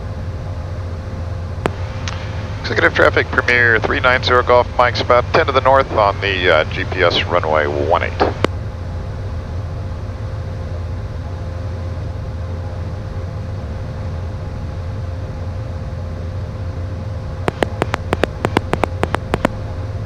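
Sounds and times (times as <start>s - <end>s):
jet cockpit hum: 0.0s - 20.0s
steady tone: 17.4s - 20.0s.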